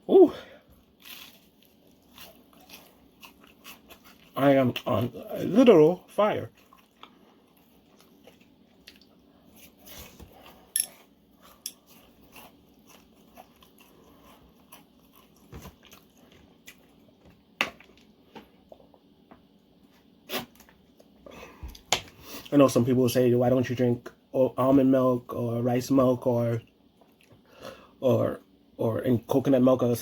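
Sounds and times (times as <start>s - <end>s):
person chewing crunchy food: 0.6s - 19.2s.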